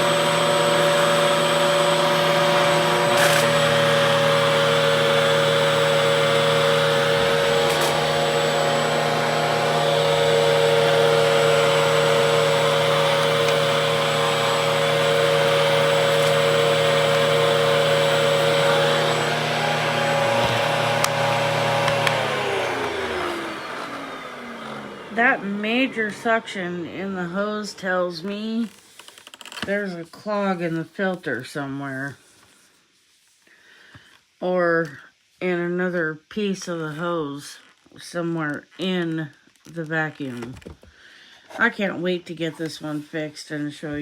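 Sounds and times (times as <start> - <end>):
vacuum cleaner motor whining: 0.0 - 28.7.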